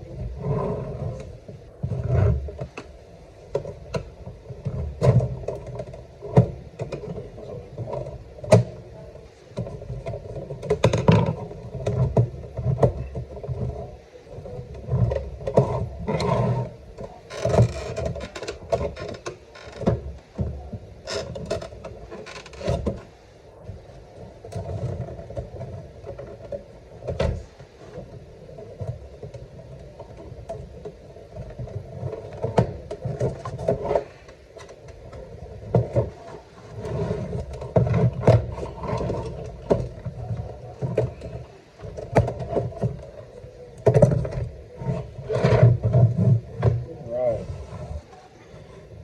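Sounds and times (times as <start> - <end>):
handling noise on microphone: 0.0 - 49.0.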